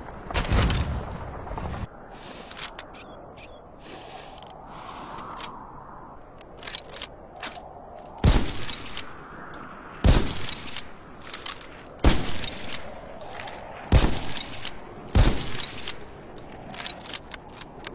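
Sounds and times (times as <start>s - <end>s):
metallic rifle bolt clicks: 6.4s - 9.6s, 15.6s - 17.9s.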